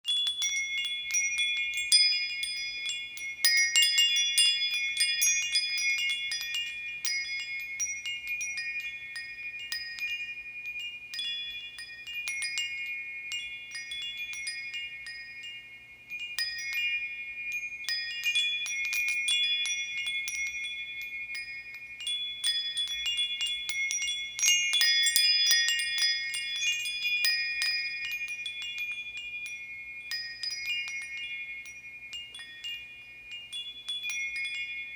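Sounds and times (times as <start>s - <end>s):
metal bar chimes tinkling: 0.0s - 34.9s.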